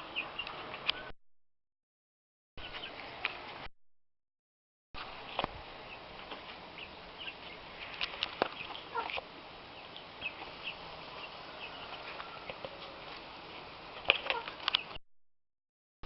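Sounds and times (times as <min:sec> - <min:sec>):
chickens calling: 0:02.6 - 0:03.4, 0:05.8 - 0:15.0
chicks peeping: 0:05.8 - 0:13.2.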